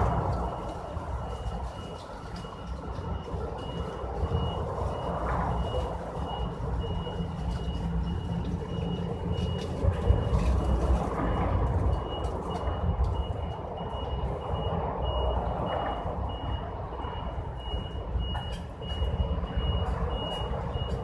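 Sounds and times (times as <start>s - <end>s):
low rumble: 0.0s - 21.0s.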